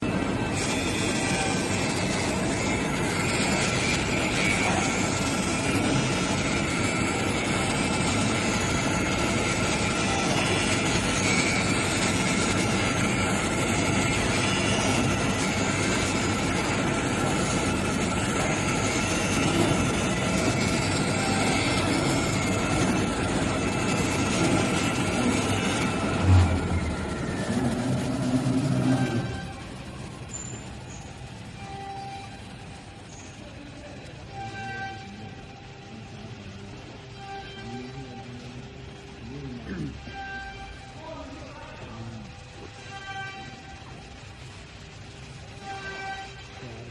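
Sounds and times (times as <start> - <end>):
cutting machine whining: 0.0 - 30.3.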